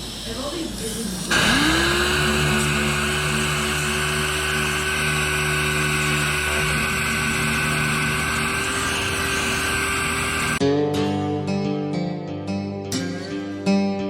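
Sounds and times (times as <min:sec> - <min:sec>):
machine droning: 0:00.0 - 0:10.6.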